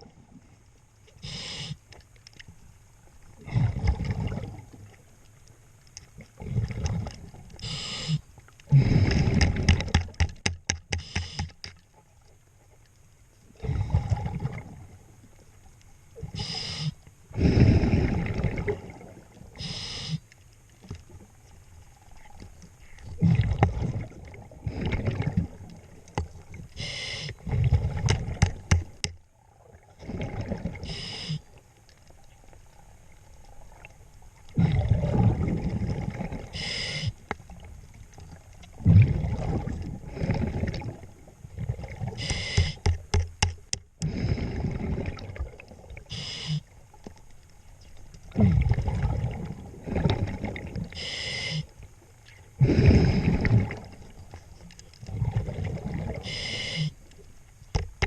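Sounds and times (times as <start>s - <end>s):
regulator hissing inhalations: 1.2s - 1.8s, 7.6s - 9.2s, 11.0s - 11.6s, 16.4s - 17.9s, 19.6s - 20.3s, 26.8s - 27.4s, 30.8s - 31.5s, 36.6s - 37.2s, 42.2s - 42.8s, 46.1s - 46.7s, 51.0s - 51.7s, 56.2s - 57.0s
bubbling exhalations underwater: 3.4s - 4.6s, 6.4s - 7.3s, 8.7s - 9.9s, 13.6s - 14.9s, 17.4s - 19.5s, 23.1s - 25.8s, 27.4s - 28.7s, 29.7s - 31.0s, 34.5s - 36.8s, 38.7s - 42.8s, 44.0s - 46.6s, 48.3s - 50.9s, 52.6s - 54.2s, 55.0s - 56.4s.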